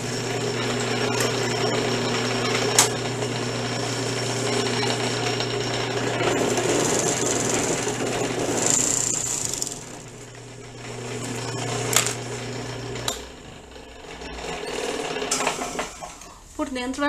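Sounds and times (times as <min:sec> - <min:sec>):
low motor hum: 0:00.0 - 0:16.0
overlock sewing machine running: 0:00.0 - 0:16.4.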